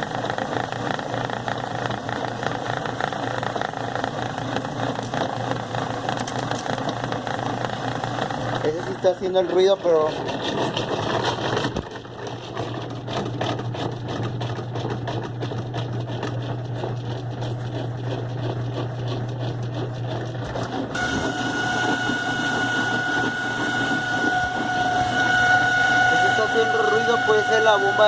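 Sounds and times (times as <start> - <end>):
washing machine running: 0.0 - 28.0
high whine: 20.9 - 28.0.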